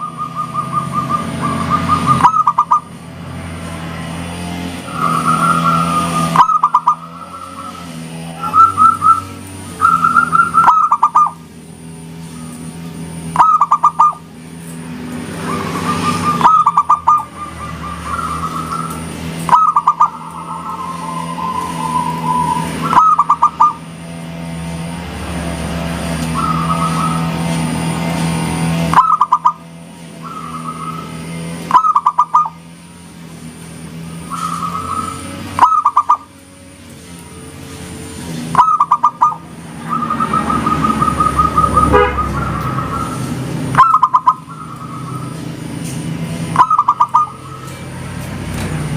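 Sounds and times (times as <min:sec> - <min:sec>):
dove cooing: 0:00.0 - 0:02.9, 0:05.8 - 0:11.4, 0:13.3 - 0:14.3, 0:15.5 - 0:23.9, 0:30.2 - 0:32.7, 0:34.2 - 0:36.4, 0:38.5 - 0:45.4, 0:46.5 - 0:47.8
soft bird warbling: 0:00.0 - 0:03.0, 0:04.9 - 0:11.4, 0:13.3 - 0:14.3, 0:15.4 - 0:23.9, 0:26.2 - 0:27.4, 0:30.2 - 0:32.6, 0:34.2 - 0:36.4, 0:38.5 - 0:45.5, 0:46.5 - 0:47.8
steady low hum: 0:06.5 - 0:48.6.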